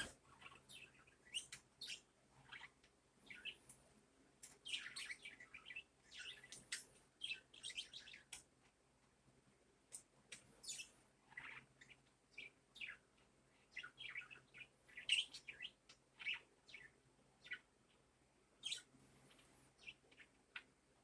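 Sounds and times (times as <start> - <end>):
budgerigars chirping: 3.3 - 3.7, 10.6 - 13.0, 13.7 - 17.6, 18.6 - 20.6.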